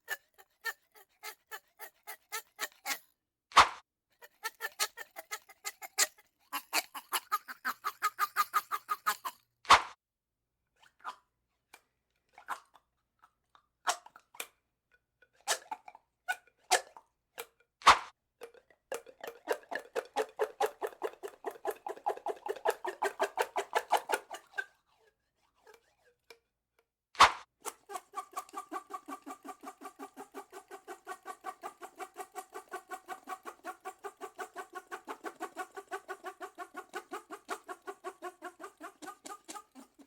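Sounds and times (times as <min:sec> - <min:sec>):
drinking straw squeaking: 0:19.0 - 0:24.8, 0:27.6 - 0:40.0.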